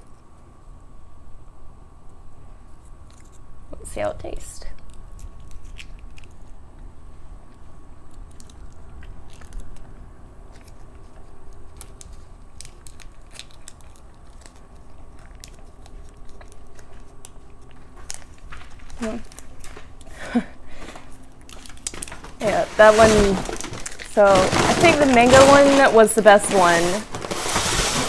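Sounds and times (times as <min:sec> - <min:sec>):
person chewing gummy candy: 0:07.4 - 0:22.5.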